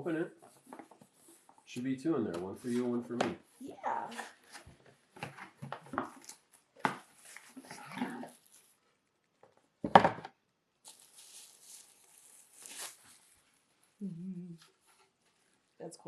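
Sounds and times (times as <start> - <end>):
packaging rustling: 5.4 - 8.9, 10.8 - 14.0.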